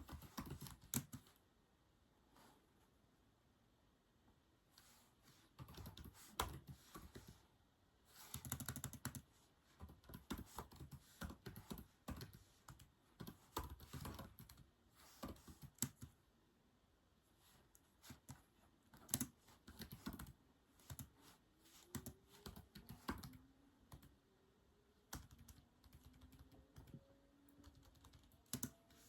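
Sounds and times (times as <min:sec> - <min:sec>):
soft keyboard keystrokes: 0:00.0 - 0:01.4, 0:05.5 - 0:07.4, 0:08.2 - 0:16.2, 0:17.7 - 0:21.2, 0:21.8 - 0:24.2, 0:25.1 - 0:29.0.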